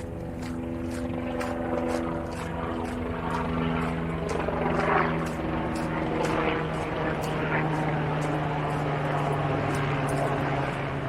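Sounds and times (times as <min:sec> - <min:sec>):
engine drone: 0:00.0 - 0:11.0
walking footsteps: 0:00.0 - 0:11.0.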